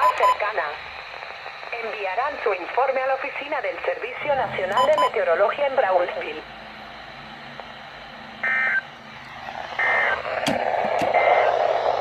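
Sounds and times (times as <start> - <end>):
radio hiss: 0.0 - 12.0
rush of static: 0.4 - 4.6, 5.4 - 12.0
digital data tone bursts: 8.4 - 8.9, 9.8 - 10.4.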